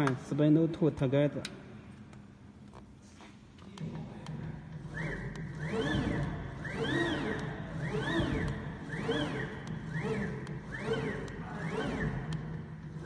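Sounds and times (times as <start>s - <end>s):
motor whine rising and falling: 4.5s - 13.0s
cnc router low hum: 4.6s - 13.0s.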